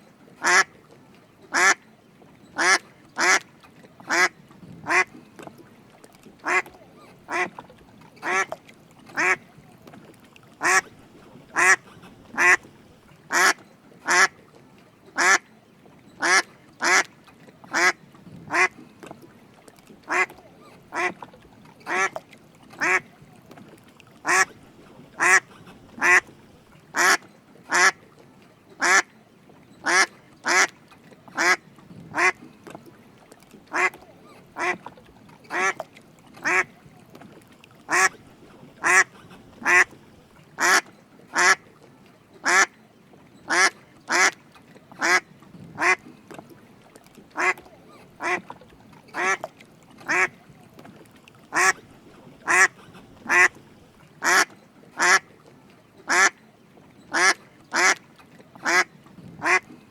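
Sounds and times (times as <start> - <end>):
mallard quacking: 0.4 - 0.7, 1.5 - 1.8, 2.6 - 3.4, 4.1 - 5.1, 6.4 - 7.6, 8.2 - 8.6, 9.2 - 9.4, 10.6 - 14.4, 15.2 - 15.4, 16.2 - 17.1, 17.7 - 18.8, 20.1 - 21.2, 21.9 - 22.2, 22.8 - 23.1, 24.2 - 26.4, 27.0 - 28.0, 28.8 - 29.1, 29.8 - 30.7, 31.4 - 32.4, 33.7 - 34.0, 34.6 - 34.9, 35.5 - 35.8, 36.4 - 36.7, 37.9 - 40.0, 40.6 - 41.6, 42.4 - 42.7, 43.5 - 44.4, 45.0 - 45.2, 45.8 - 46.0, 47.4 - 48.5, 49.2 - 49.5, 50.1 - 50.4, 51.5 - 53.6, 54.2 - 55.2, 56.1 - 56.4, 57.1 - 58.0, 58.6 - 59.7.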